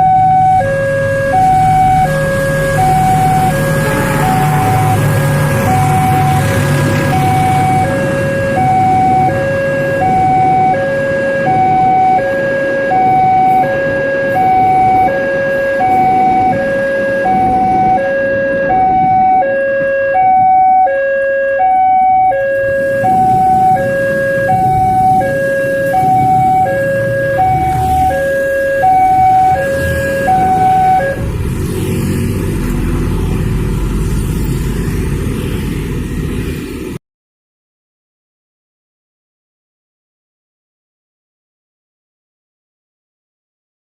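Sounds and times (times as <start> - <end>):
level crossing siren two-tone wail: 0.0 - 31.3
rumble of passing vehicles: 0.0 - 37.0.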